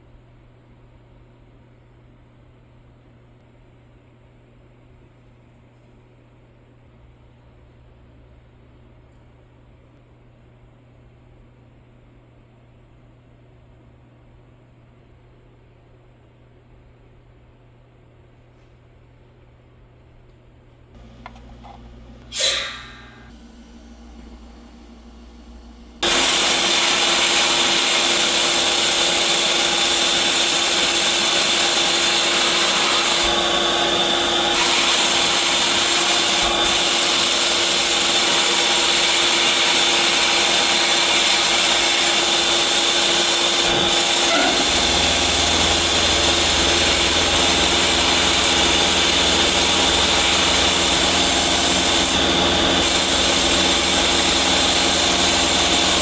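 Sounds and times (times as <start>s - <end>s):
low hum: 21.0s - 26.0s, 43.8s - 55.7s
power tool grinding: 21.0s - 56.0s.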